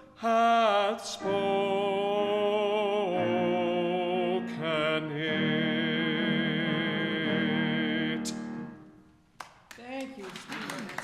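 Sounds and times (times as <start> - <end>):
man singing: 0.0 - 8.6
piano accompaniment: 0.0 - 9.2.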